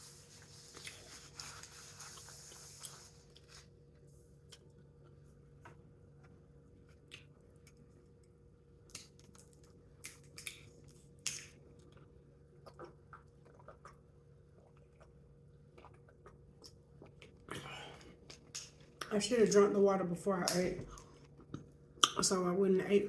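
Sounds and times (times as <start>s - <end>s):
low steady hum: 0.0s - 23.0s
chewing and mouth sounds: 6.2s - 19.2s.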